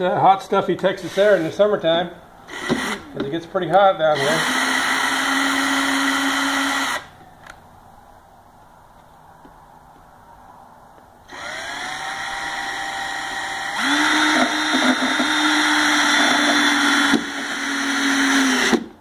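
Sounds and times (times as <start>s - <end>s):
power drill drilling into wood: 2.5s - 3.1s, 4.1s - 7.1s, 11.3s - 19.0s.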